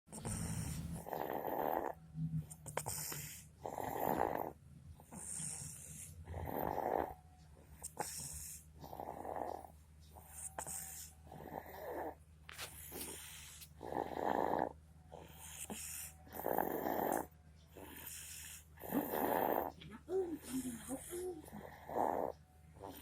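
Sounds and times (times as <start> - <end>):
baby snoring: 0.1 - 7.2, 7.8 - 23.0
soft hissing breath: 12.5 - 13.8.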